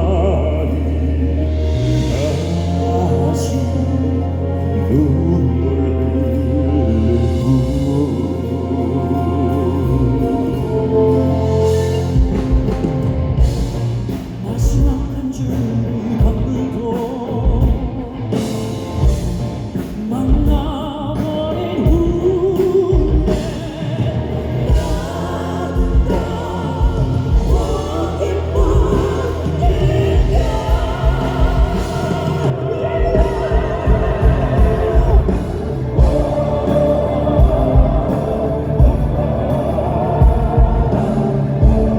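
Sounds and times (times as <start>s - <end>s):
men singing in harmony: 0.0s - 19.2s, 19.8s - 41.9s
rock band playing: 0.0s - 41.9s
heavy drum hits: 24.7s - 41.9s.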